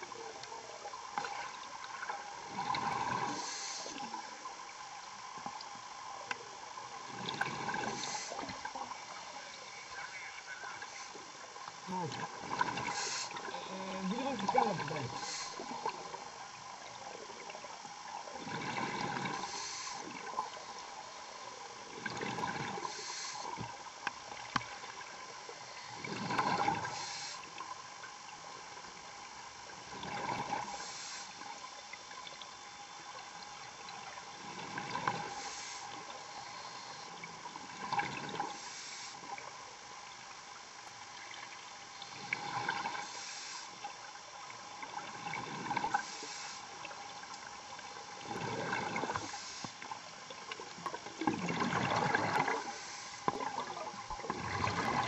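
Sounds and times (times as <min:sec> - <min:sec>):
exhaled bubbles underwater: 0:00.0 - 0:55.0
regulator hiss: 0:02.8 - 0:04.5, 0:07.6 - 0:18.3, 0:19.0 - 0:29.1, 0:30.4 - 0:37.6, 0:38.4 - 0:39.8, 0:41.2 - 0:44.2, 0:45.8 - 0:50.9, 0:52.2 - 0:54.3.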